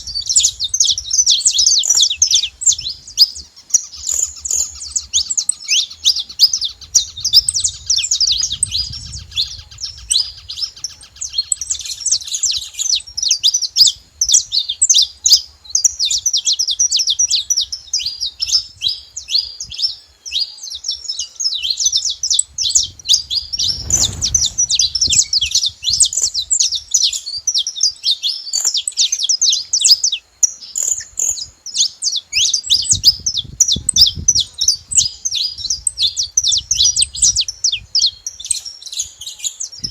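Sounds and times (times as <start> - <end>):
finches chirping: 0.0 - 39.9
low rumble: 22.6 - 26.4.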